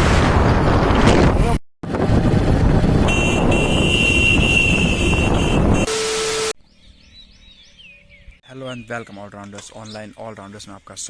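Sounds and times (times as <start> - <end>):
wind on microphone: 0.0 - 5.9
rushing vehicle noise: 0.0 - 6.5.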